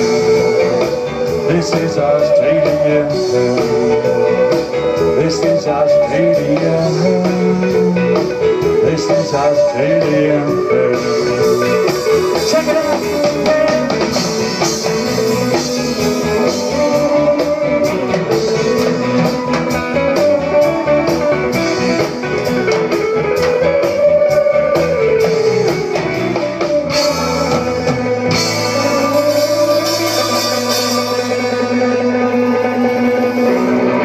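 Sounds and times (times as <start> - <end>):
bass: 0.0 - 34.0
drums: 0.0 - 34.0
guitar: 0.0 - 34.0.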